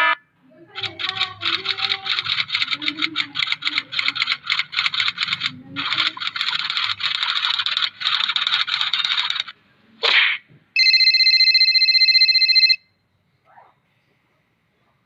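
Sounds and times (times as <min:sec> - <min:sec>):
fast typing on keyboard: 0:00.7 - 0:09.5.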